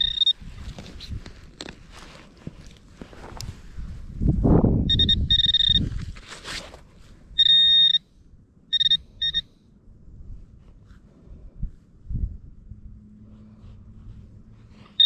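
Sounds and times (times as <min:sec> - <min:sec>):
metal detector beeps: 0:00.0 - 0:00.4, 0:04.8 - 0:05.9, 0:07.4 - 0:08.1, 0:08.7 - 0:09.6
low scuffing and rustling: 0:00.4 - 0:04.8, 0:05.8 - 0:07.2.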